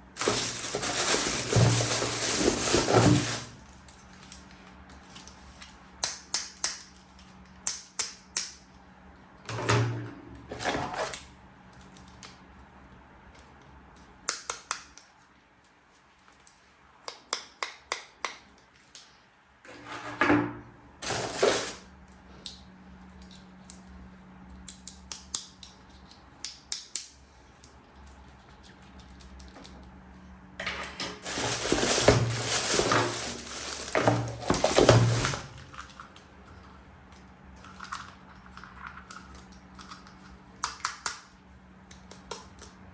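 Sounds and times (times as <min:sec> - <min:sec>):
rustling and clattering: 0:00.2 - 0:03.7, 0:21.0 - 0:21.8, 0:30.8 - 0:36.1.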